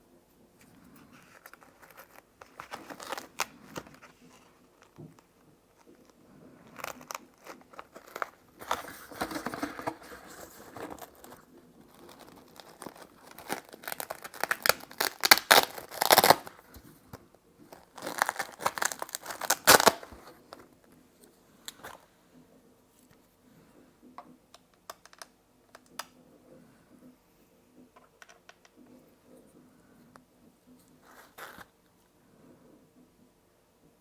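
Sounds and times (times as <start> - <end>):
packaging crinkling and rustling: 0.7 - 20.8, 21.6 - 22.0, 31.0 - 31.7.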